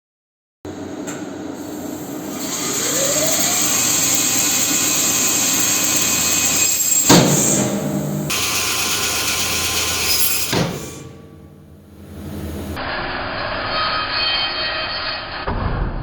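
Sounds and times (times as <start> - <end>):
meat bandsaw running: 1.1 - 12.8
loud sharp noise: 1.6 - 14.5.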